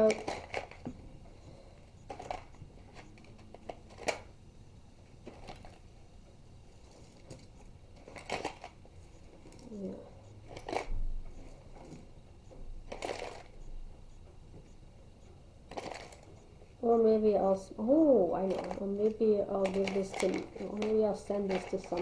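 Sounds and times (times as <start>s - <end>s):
small objects clicking and rustling: 0.0s - 0.9s, 2.1s - 4.3s, 5.2s - 5.8s, 6.8s - 8.8s, 10.5s - 11.0s, 12.9s - 13.6s, 15.7s - 16.3s, 18.4s - 22.0s.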